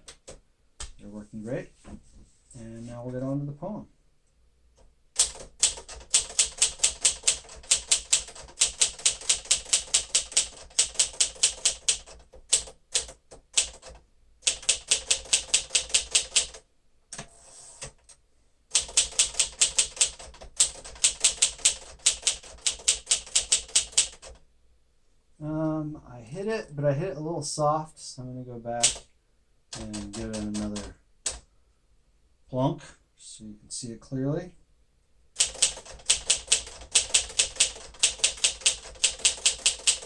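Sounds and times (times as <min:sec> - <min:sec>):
manual typewriter typing: 0:05.2 - 0:16.6, 0:18.7 - 0:24.4, 0:28.8 - 0:29.1, 0:29.7 - 0:31.4, 0:35.4 - 0:40.0.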